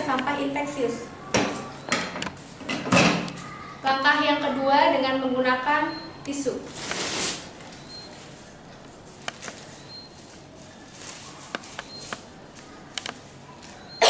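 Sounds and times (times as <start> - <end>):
faint clicks and taps: 8.7 - 9.6, 11.5 - 13.8.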